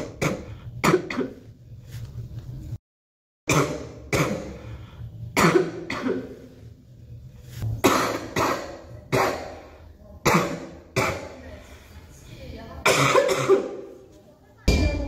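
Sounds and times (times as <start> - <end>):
girl coughing: 5.4 - 6.4, 7.8 - 9.6, 10.2 - 11.4, 12.8 - 13.9.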